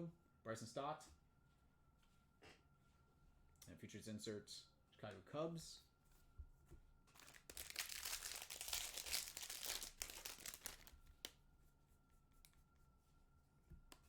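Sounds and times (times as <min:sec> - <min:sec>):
foil wrapper crinkling and tearing: 0:07.1 - 0:11.3.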